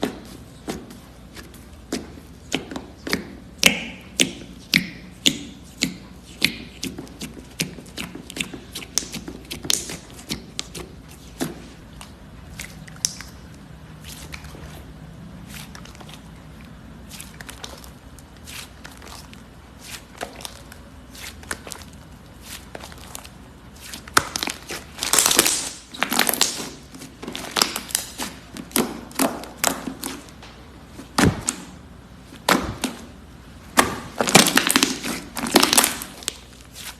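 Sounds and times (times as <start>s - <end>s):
slime clicking and popping: 12.9s - 13.4s, 24.1s - 26.8s.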